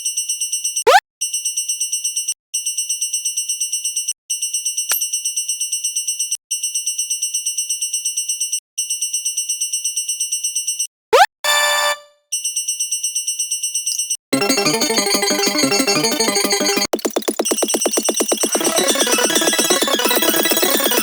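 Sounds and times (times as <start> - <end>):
electronic crossing bell ringing: 14.4 - 16.9, 17.5 - 21.0.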